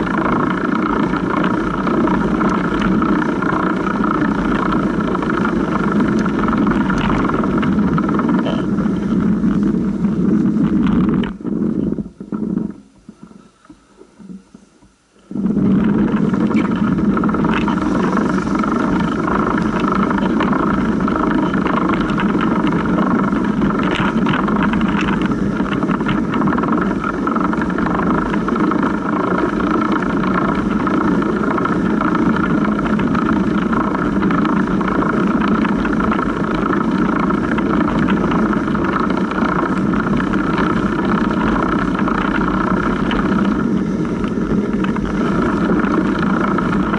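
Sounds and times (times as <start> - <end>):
bicycle chain running over pulley: 0.0 - 13.3, 15.2 - 46.9
tyres rolling through snow: 0.0 - 14.6, 15.2 - 46.9.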